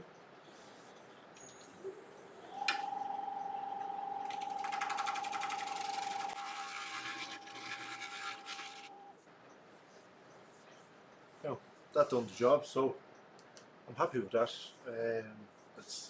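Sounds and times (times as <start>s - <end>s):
wood lathe motor whine: 2.3s - 9.2s
scraper scraping wood bowl: 4.6s - 9.0s.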